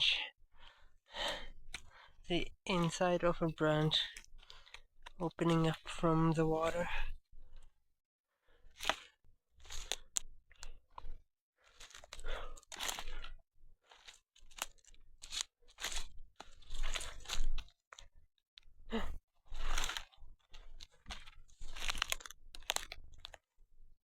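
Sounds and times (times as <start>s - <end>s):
footsteps crunching on forest ground: 2.5s - 6.2s, 8.8s - 10.8s, 11.6s - 18.0s, 19.5s - 23.4s.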